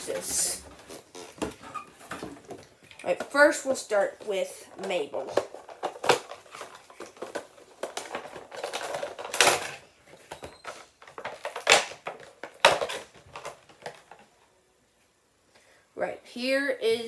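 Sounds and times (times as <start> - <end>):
plastic clicks and crinkles: 4.7 - 14.4
packaging rustling: 5.2 - 14.3.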